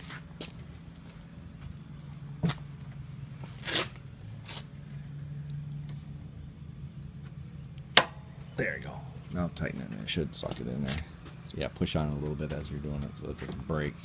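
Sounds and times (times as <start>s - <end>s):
scraping rustles: 0.0s - 5.1s
low steady hum: 0.0s - 14.0s.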